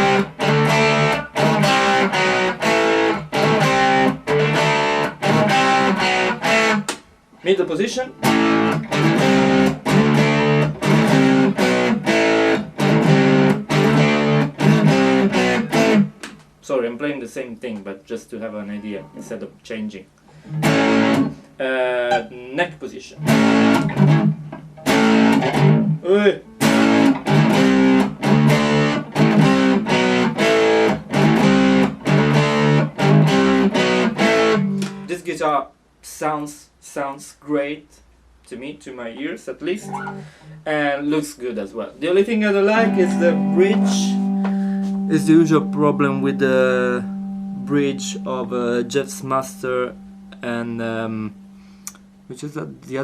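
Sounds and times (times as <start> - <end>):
distorted electric guitar chords: 0.0 - 6.9, 8.1 - 16.4, 20.3 - 21.5, 23.2 - 35.2, 39.7 - 40.6, 42.1 - 53.0.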